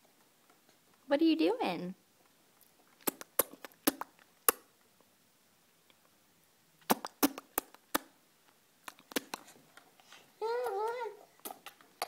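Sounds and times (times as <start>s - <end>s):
baby clicking tongue and lips: 2.6s - 4.8s, 6.8s - 8.2s, 8.8s - 9.8s, 10.5s - 12.0s.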